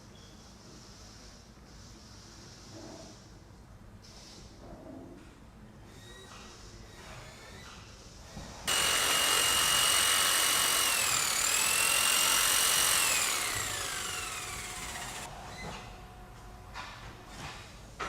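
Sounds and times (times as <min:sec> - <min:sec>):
power tool motor whining: 0:08.7 - 0:15.3.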